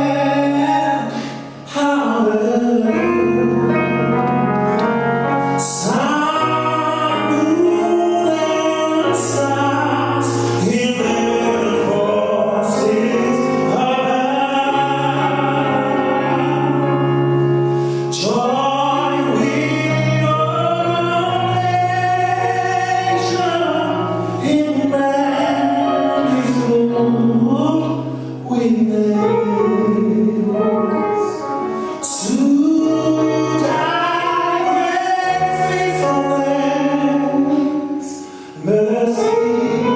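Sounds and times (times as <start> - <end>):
choir singing with instruments: 2.9 - 27.4, 32.0 - 39.9.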